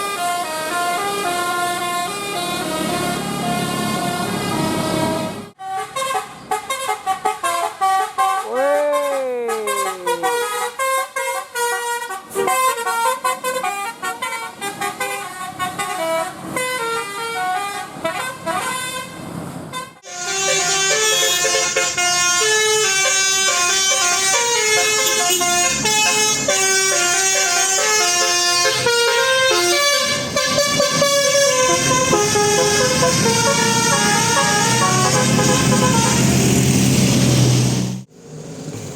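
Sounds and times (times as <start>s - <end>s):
musical air horns playing melodies: 0.0s - 37.0s.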